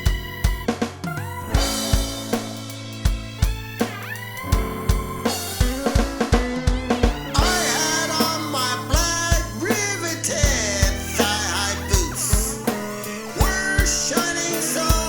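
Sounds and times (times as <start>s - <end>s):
bass line: 0.0s - 15.0s
kick and snare drum beat: 0.0s - 15.0s
lead vocal singing: 7.2s - 15.0s.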